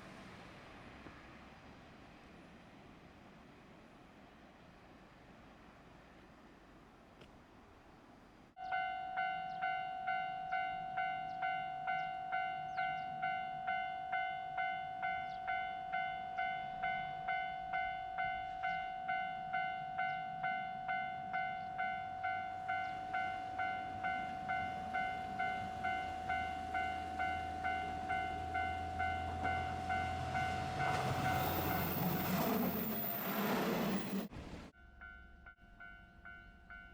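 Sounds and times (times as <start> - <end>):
level crossing warning bell: 8.6 - 33.1
diesel train rumble: 21.3 - 34.8.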